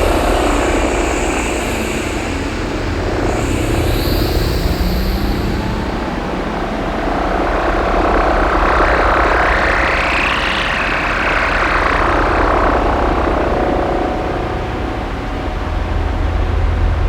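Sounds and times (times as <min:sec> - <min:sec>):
rising synthesizer hiss: 0:00.0 - 0:06.7
synthesizer noise drone: 0:00.0 - 0:17.0.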